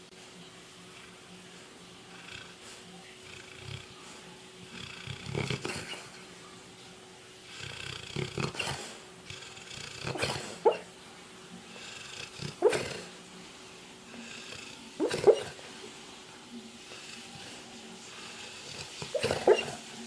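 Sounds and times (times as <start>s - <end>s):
sleeping dog whimpering: 14.5s - 15.6s, 18.5s - 19.9s.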